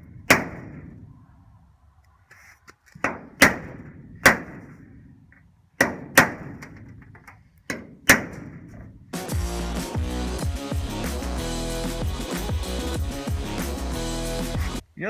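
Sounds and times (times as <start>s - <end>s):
background music: 9.2s - 14.8s.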